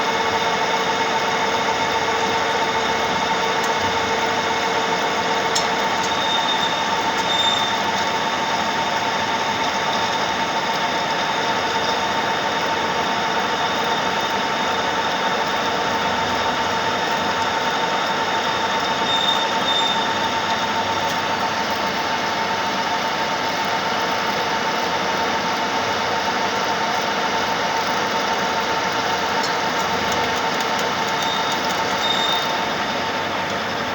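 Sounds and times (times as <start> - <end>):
metal lathe whine: 0.0 - 33.9.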